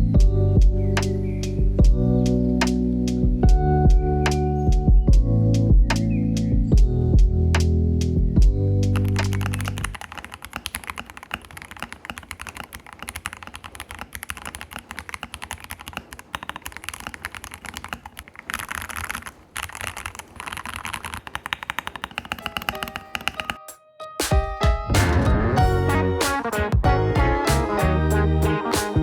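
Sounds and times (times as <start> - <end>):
music: 0.0 - 9.9, 22.5 - 29.0
mechanical keyboard typing: 8.8 - 23.7.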